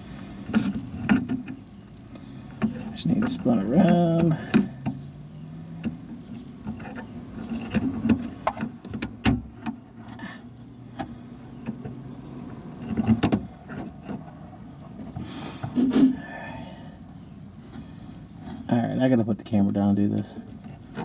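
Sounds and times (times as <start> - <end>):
clicks inside a car door: 2.6 - 5.0, 12.8 - 14.2.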